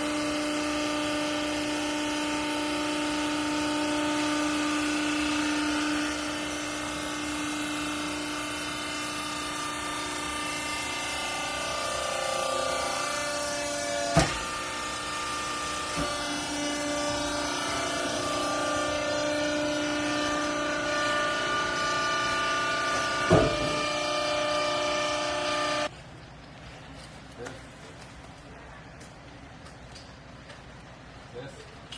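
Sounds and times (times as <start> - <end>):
hydraulic pump motor whining: 0.0 - 25.9
sharp knocks: 23.2 - 24.0.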